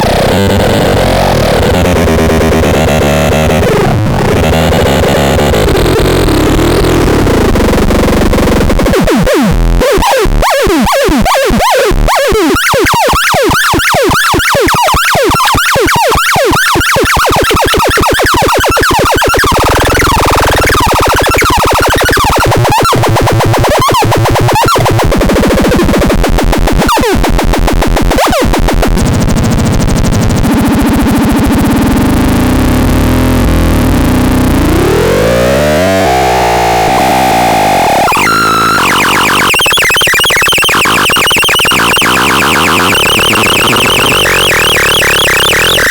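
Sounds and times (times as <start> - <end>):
glitchy synthesizer noise: 0.0 - 45.9
sharp clicks: 38.0 - 45.9.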